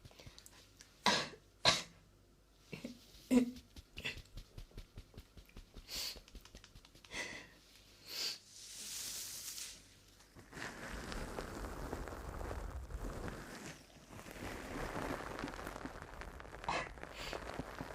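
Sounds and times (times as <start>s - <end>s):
wet mouth clicks: 5.4s - 7.3s
breathy hiss: 5.5s - 9.8s, 10.6s - 17.9s
crackling rustle: 8.7s - 17.9s.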